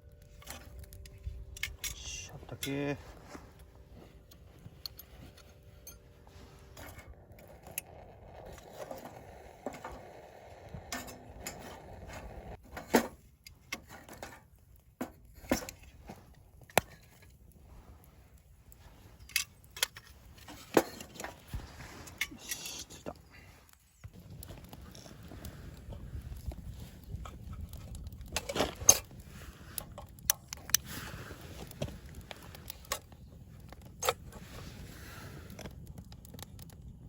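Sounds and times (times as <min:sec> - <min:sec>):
camp gear clinking and knocking: 0:00.0 - 0:09.9, 0:10.9 - 0:17.4, 0:19.0 - 0:25.3
soft rustling: 0:00.3 - 0:08.4.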